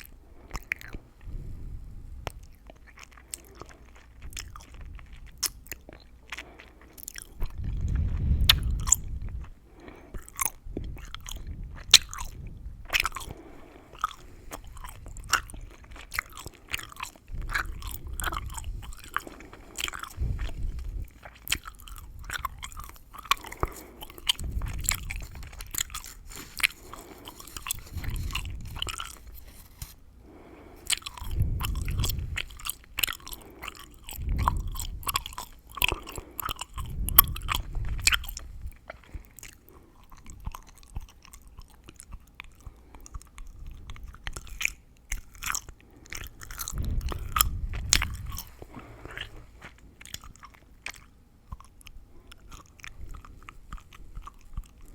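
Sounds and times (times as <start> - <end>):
gum chewing clicks and crackles: 0.0 - 54.9
low muffled swells: 46.4 - 49.6.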